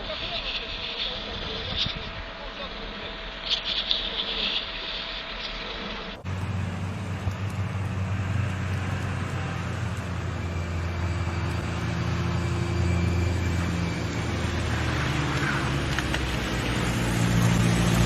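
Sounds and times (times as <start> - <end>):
road noise: 5.4 - 18.0
vehicle engine running low: 6.2 - 18.0.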